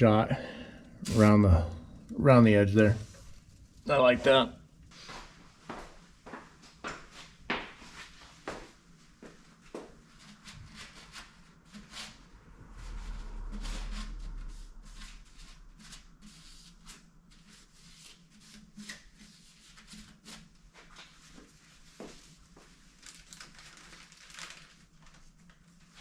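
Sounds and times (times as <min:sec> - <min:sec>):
low rumble: 0:12.2 - 0:15.7.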